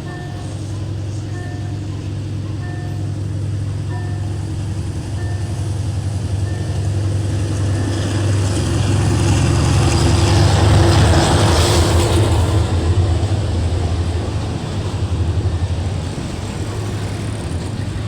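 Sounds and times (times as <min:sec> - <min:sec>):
level crossing warning beeps: 0:00.0 - 0:07.1
locomotive engine droning: 0:00.0 - 0:18.0
train wheels on rails: 0:00.0 - 0:18.0.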